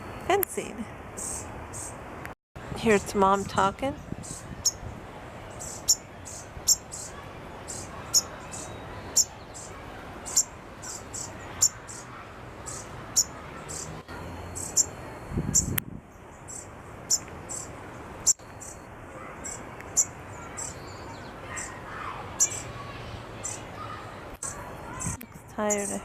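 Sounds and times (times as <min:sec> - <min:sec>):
sparrow chip calls: 0:01.2 - 0:02.0, 0:04.0 - 0:04.9, 0:05.5 - 0:14.0, 0:14.6 - 0:21.8, 0:22.4 - 0:22.7, 0:24.4 - 0:26.0.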